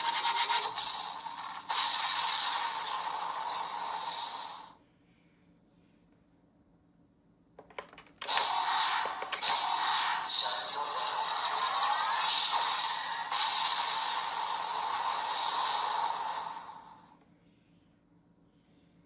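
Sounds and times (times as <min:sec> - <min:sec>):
plastic toy clicks: 0:07.6 - 0:09.6.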